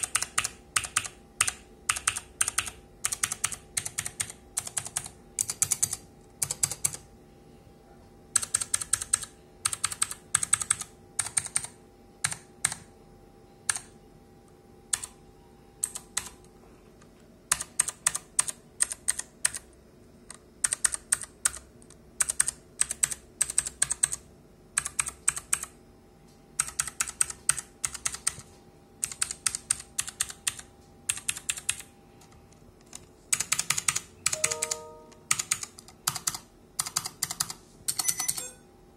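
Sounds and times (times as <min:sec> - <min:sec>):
mechanical keyboard typing clicks: 0:00.0 - 0:07.0, 0:08.4 - 0:12.9, 0:13.7 - 0:13.9, 0:14.9 - 0:15.2, 0:15.8 - 0:16.4, 0:17.5 - 0:19.7, 0:20.3 - 0:24.2, 0:24.8 - 0:25.8, 0:26.6 - 0:31.9, 0:32.8 - 0:38.6.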